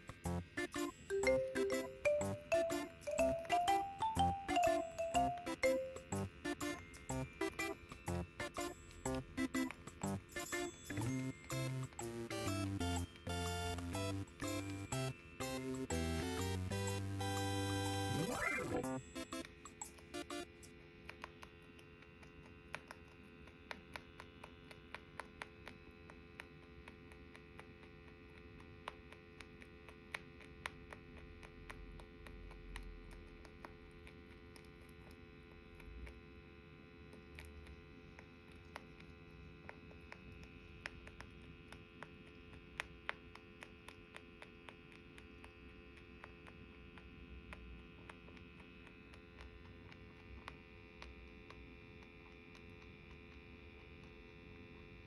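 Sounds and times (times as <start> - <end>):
steady electrical hum: 0.0 - 20.9.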